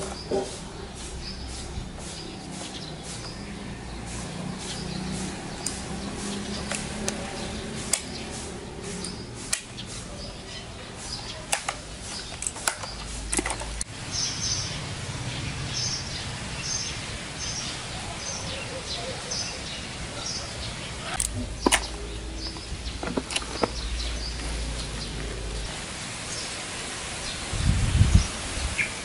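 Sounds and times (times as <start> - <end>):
sharp clicks and taps: 7.8 - 8.2.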